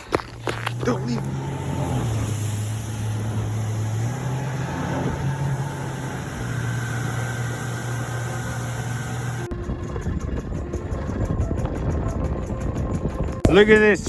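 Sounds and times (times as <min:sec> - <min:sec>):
engine humming: 0:00.0 - 0:13.5
rough rushing noise: 0:00.4 - 0:11.5.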